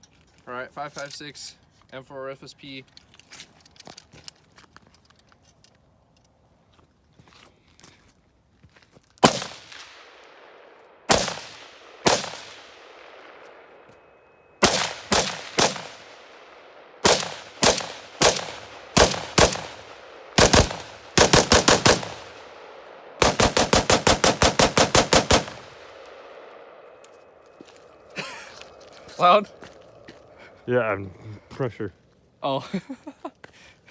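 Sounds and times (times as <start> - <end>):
rifle shots with ringing tail: 9.2 - 27.5.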